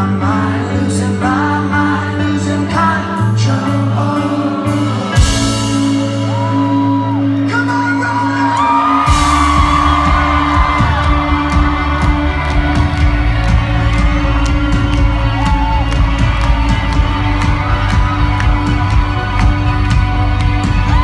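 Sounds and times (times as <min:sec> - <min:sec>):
live rock band playing: 0:00.0 - 0:21.0
voices whooping: 0:06.2 - 0:13.5, 0:14.6 - 0:19.4.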